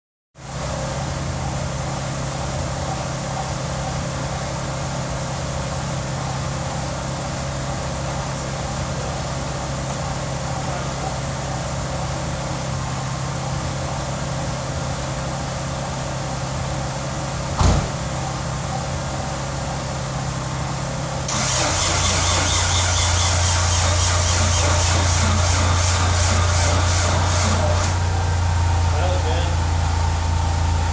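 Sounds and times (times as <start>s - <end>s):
starter motor whirring: 21.3s - 28.0s.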